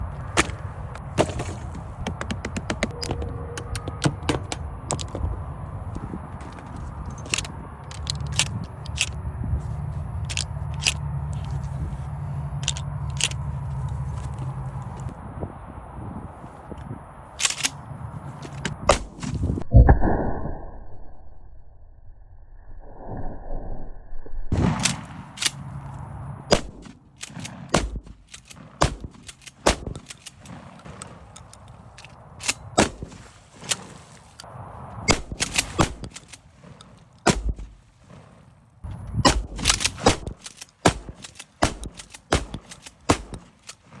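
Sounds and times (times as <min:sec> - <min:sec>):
gunshot bangs: 0:26.5 - 0:31.0, 0:32.8 - 0:33.2, 0:35.1 - 0:36.1, 0:37.2 - 0:38.2, 0:39.2 - 0:43.6.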